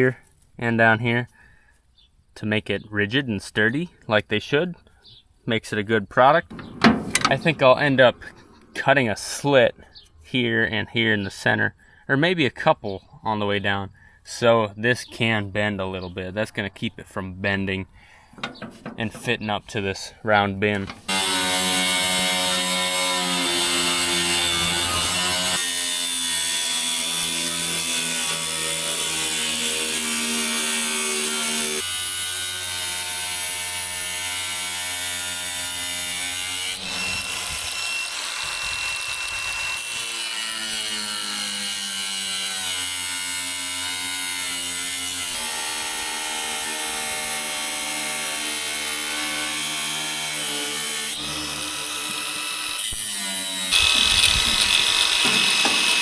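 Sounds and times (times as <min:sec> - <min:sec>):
power tool cutting sheet steel: 0:21.1 - 0:56.0.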